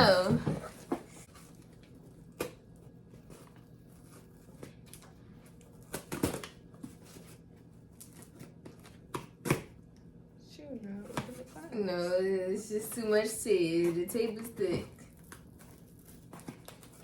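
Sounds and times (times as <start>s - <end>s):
packing tape tearing: 5.7s - 6.6s.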